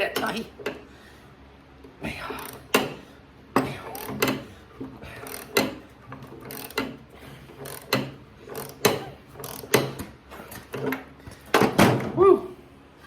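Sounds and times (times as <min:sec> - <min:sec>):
ratchet wrench clicking: 0:03.9 - 0:04.4, 0:05.2 - 0:07.0, 0:07.6 - 0:10.0.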